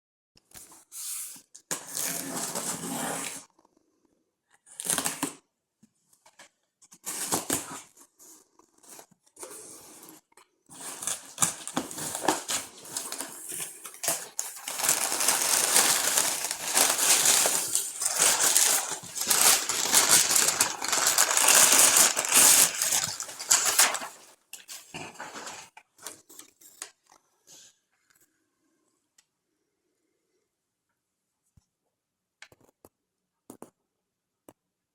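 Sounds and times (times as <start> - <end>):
packaging tearing and rustling: 7.0 - 7.9, 10.8 - 25.7.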